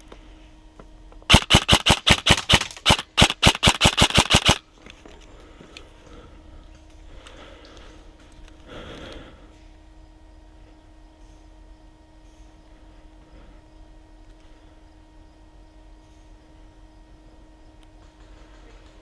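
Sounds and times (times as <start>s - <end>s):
airsoft gun firing: 1.3s - 4.6s.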